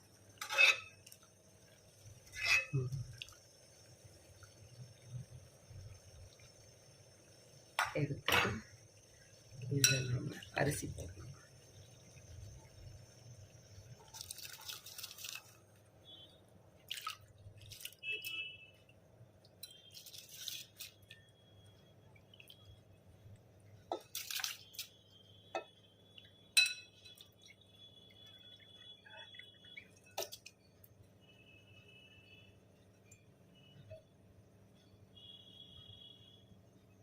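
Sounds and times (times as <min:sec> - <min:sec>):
low steady hum: 0:00.0 - 0:14.4
utensils clinking against pot: 0:00.4 - 0:01.0, 0:02.3 - 0:03.0, 0:07.8 - 0:08.6, 0:09.8 - 0:10.4, 0:26.6 - 0:27.2
rice poured into boiling water: 0:10.3 - 0:18.4, 0:19.7 - 0:22.8.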